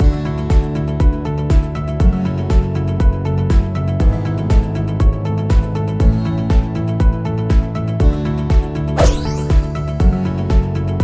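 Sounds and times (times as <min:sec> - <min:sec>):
kick drum beat: 0:00.0 - 0:11.0
electronic music: 0:09.0 - 0:10.7.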